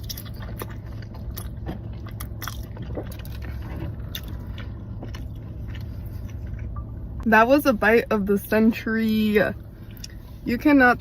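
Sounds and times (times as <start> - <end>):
mouth chewing crunchy food: 0.0 - 7.2
steady low hum: 0.0 - 11.0.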